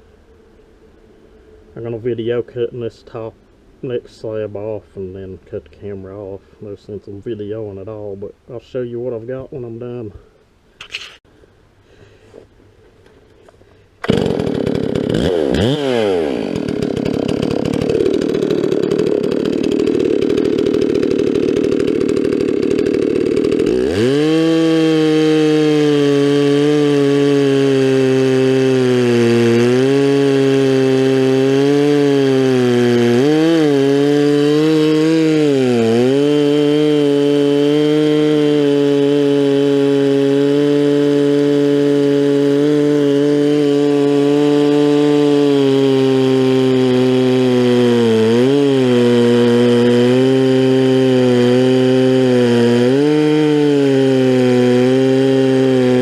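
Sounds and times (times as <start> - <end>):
chainsaw cutting log: 10.8 - 11.2, 13.0 - 56.0.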